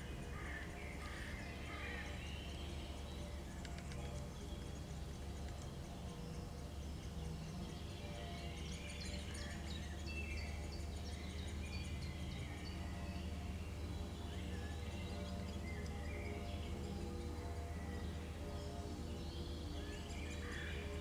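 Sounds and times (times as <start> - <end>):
songbirds singing: 0.0 - 21.0
steady low hum: 0.0 - 21.0.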